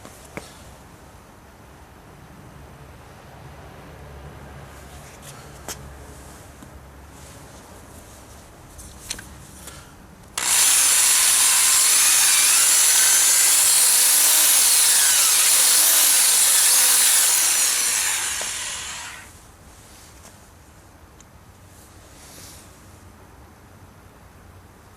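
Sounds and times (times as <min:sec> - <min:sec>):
electric drill whirring: 0:10.4 - 0:19.3.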